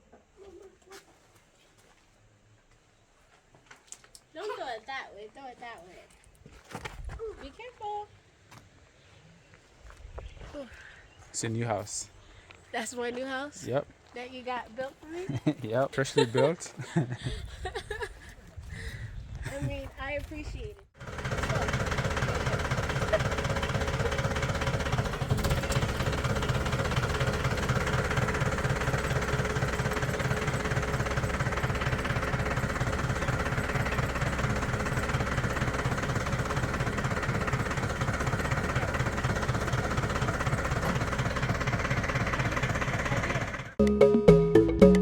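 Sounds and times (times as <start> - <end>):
engine running with pulsing beat: 21.0 - 45.0.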